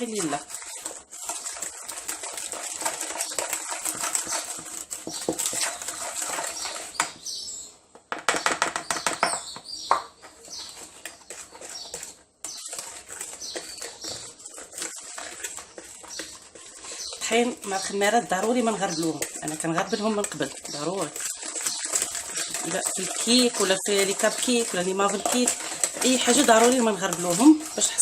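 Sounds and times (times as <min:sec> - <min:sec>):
batter mixed by hand in bowl: 0:00.0 - 0:28.0.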